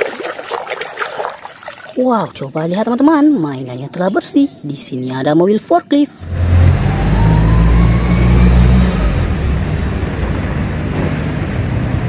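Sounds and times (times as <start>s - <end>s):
faint rising whine: 6.2s - 11.7s.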